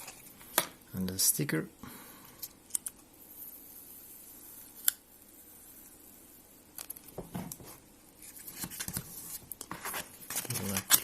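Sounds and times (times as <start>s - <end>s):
sticker peeling rustles: 6.8s - 11.0s.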